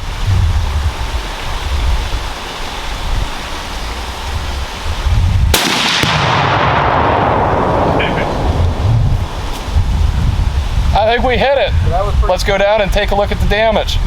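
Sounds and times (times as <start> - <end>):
wind buffeting microphone: 0.0 - 14.0
rifle shot: 5.5 - 9.6
distant explosion: 5.5 - 11.0
rumbling echo: 5.5 - 11.3.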